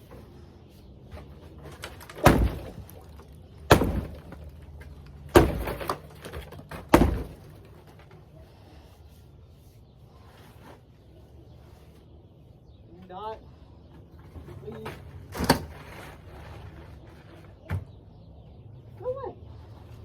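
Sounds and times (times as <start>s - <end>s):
rattle of debris: 1.1s - 8.4s
sledgehammer blows on tub shell: 2.2s - 2.8s, 3.7s - 4.4s, 5.3s - 6.0s, 6.9s - 7.5s.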